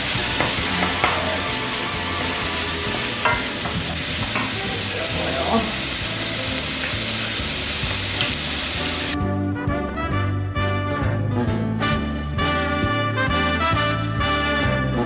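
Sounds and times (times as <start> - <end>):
prawns sizzling in oil: 0.0 - 9.2
brassy swing music: 0.0 - 15.0.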